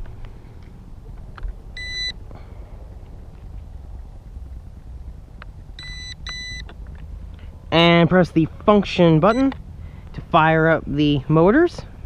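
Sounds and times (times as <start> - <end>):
short high beeps: 1.8 - 2.2, 5.8 - 6.7.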